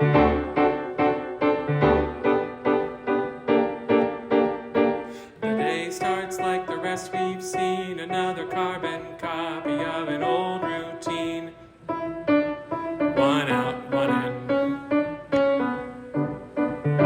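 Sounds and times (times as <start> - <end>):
piano repeated chords: 0.0 - 17.0
person singing: 5.1 - 11.6, 13.1 - 15.2.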